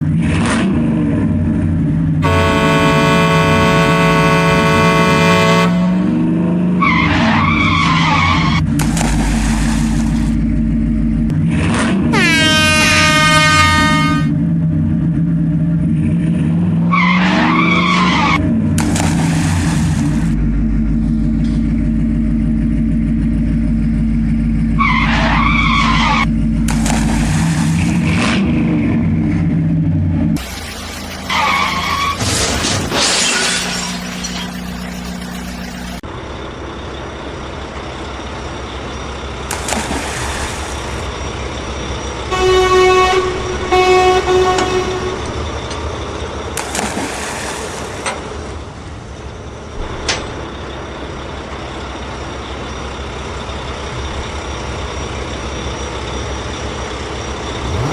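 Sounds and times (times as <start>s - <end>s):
engine drone: 0.0s - 57.9s
horn honks: 2.2s - 6.9s, 12.1s - 14.4s, 42.3s - 45.7s
quieter engine running: 18.4s - 24.9s.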